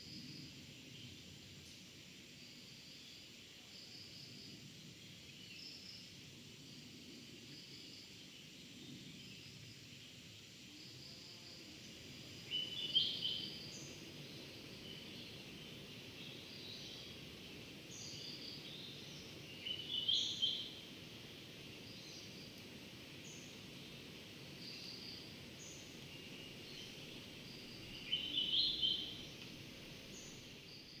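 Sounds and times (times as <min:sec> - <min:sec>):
bird singing short song: 0:24.6 - 0:29.4.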